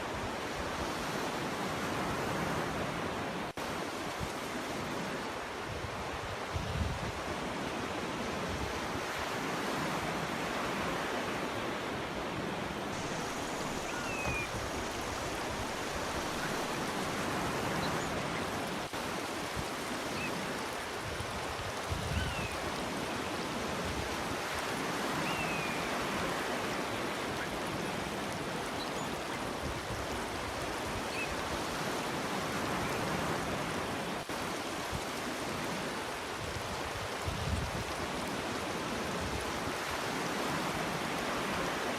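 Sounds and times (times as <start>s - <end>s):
waves washing on a beach: 0.0s - 41.9s
faint bird chirps: 13.3s - 14.6s, 25.2s - 26.0s.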